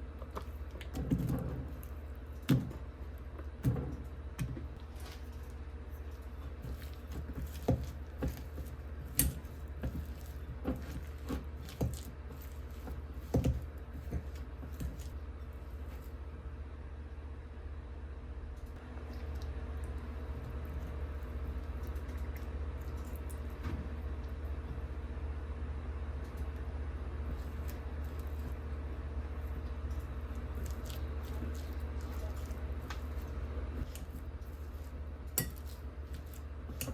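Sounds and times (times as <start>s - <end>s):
steady low hum: 0.0s - 36.9s.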